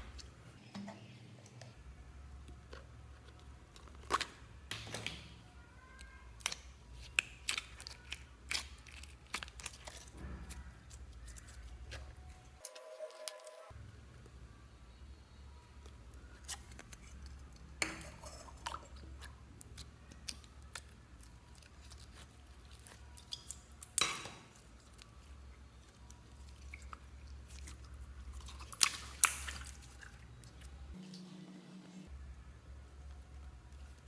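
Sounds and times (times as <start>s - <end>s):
low steady hum: 0.0s - 34.0s
slime squishing and clicking: 3.7s - 12.2s, 15.8s - 25.3s, 25.9s - 30.7s
slime snapping: 6.4s - 10.6s, 28.6s - 29.9s.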